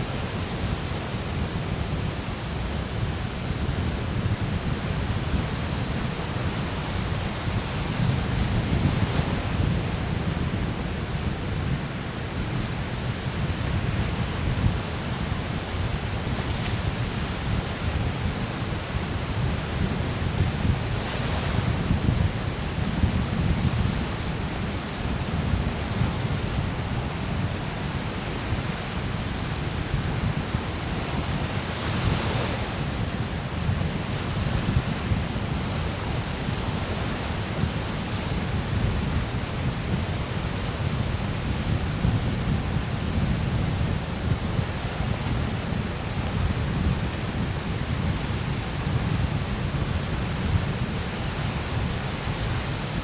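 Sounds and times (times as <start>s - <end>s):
wind buffeting microphone: 6.8s - 27.3s, 37.6s - 53.0s.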